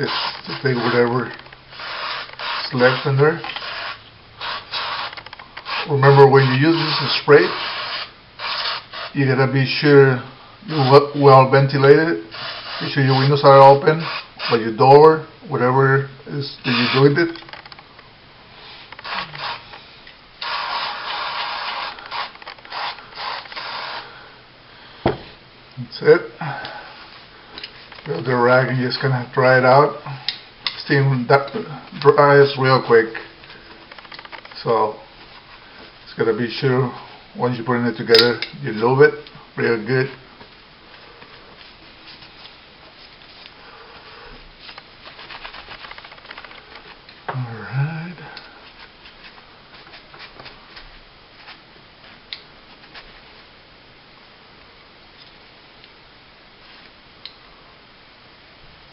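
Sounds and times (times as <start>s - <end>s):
rag rubbing on metal parts: 0.0s - 9.2s, 18.8s - 24.1s
aerosol spray hissing: 1.7s - 9.2s, 12.3s - 14.5s, 20.4s - 24.1s
small scratchy clicks: 5.0s - 5.7s, 33.9s - 34.6s, 44.7s - 46.9s.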